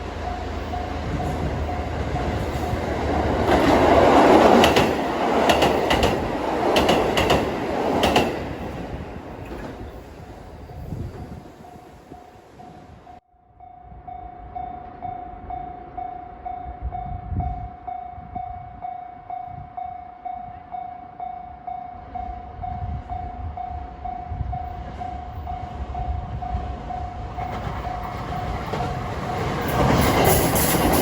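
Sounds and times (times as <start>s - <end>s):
level-crossing warning bell: 0.0s - 6.1s, 10.6s - 31.0s
train rumble: 0.0s - 13.2s, 22.1s - 31.0s.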